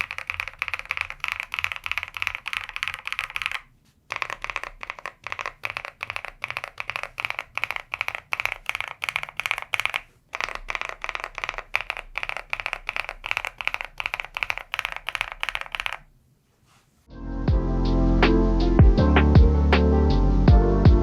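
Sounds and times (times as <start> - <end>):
mechanical keyboard clacking: 0.0 - 16.1.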